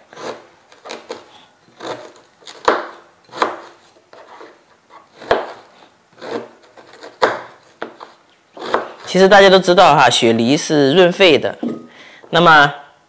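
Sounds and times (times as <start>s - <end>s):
knife chopping on cutting board: 0.1s - 9.1s.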